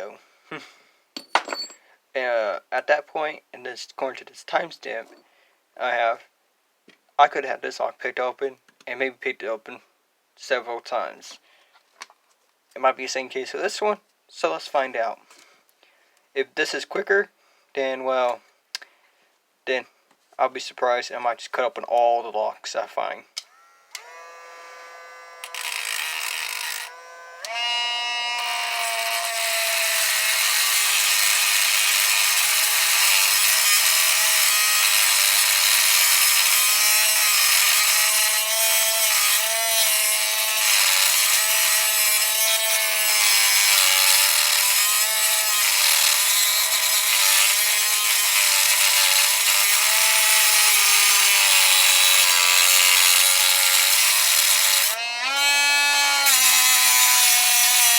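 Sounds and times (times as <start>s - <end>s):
power cutter grinding metal: 23.6s - 57.9s.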